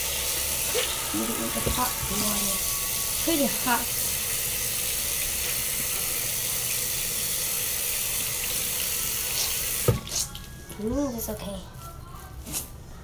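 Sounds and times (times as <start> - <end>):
water running from a tap: 0.0 - 10.5.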